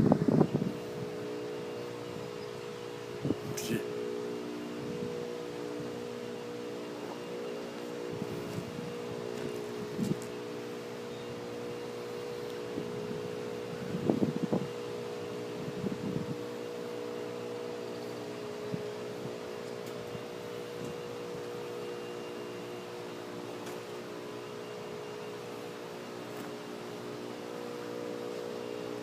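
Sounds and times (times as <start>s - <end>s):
mechanical hum: 0.0s - 29.0s.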